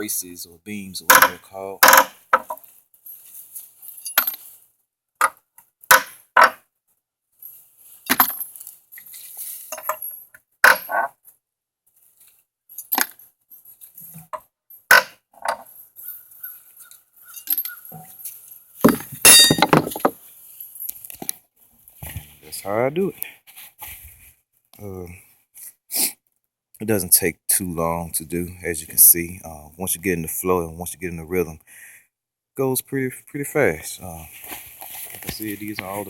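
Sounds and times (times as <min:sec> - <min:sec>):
metal tool clinking and knocking: 0:01.1 - 0:02.6, 0:03.9 - 0:04.5, 0:08.0 - 0:08.7, 0:09.7 - 0:11.1, 0:12.8 - 0:13.3, 0:17.2 - 0:18.2, 0:18.8 - 0:20.2.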